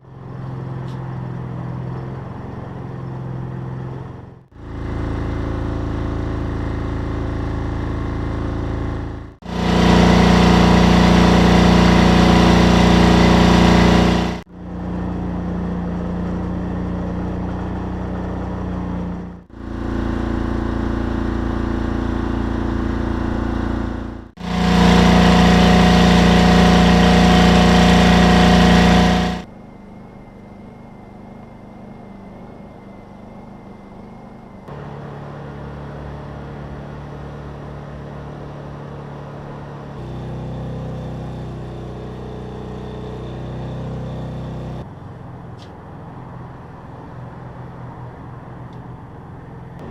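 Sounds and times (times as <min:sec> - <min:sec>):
portable generators running: 0:04.5 - 0:29.5.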